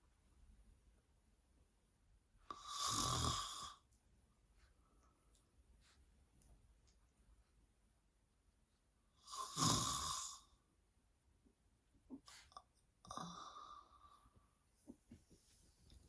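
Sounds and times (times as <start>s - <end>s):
woman snoring: 2.5s - 3.8s, 9.2s - 10.5s.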